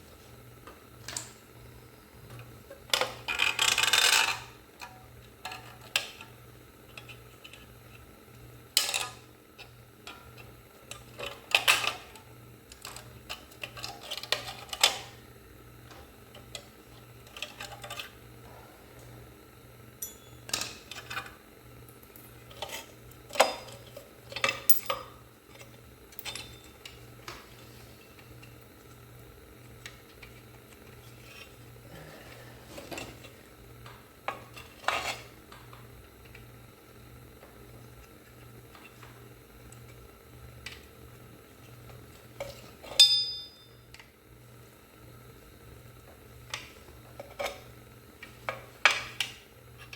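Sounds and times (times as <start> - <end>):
steady low hum: 0.0 - 49.9
metal tools clinking: 20.0 - 20.6, 24.5 - 25.0, 43.0 - 43.7.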